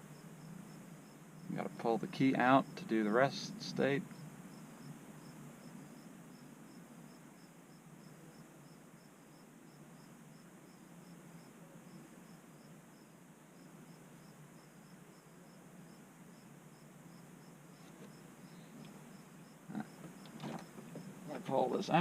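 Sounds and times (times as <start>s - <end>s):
cricket chirping: 0.0s - 22.0s.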